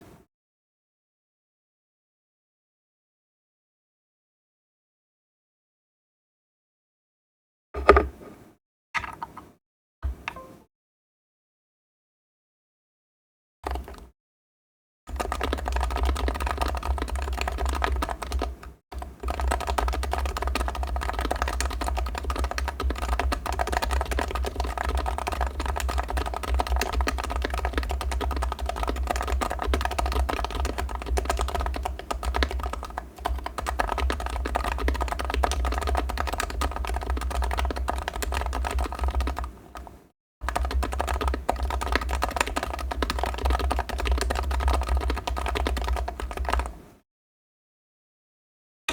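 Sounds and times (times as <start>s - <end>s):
typing on keyboard: 13.7s - 14.1s, 15.1s - 46.8s.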